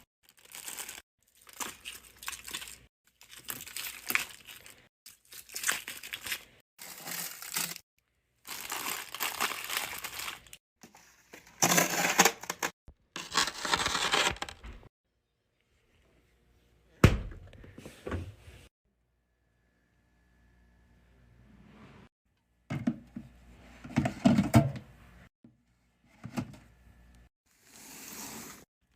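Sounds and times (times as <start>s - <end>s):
plastic packaging crinkling: 0.2s - 7.8s, 8.4s - 10.6s, 13.2s - 14.6s.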